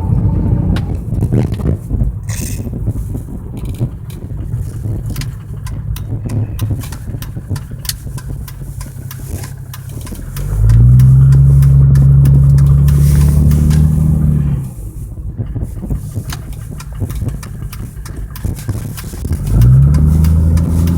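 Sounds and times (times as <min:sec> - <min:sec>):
loud low-pitched drone: 0:00.0 - 0:07.8
engine running with rapid ticking: 0:00.0 - 0:20.9.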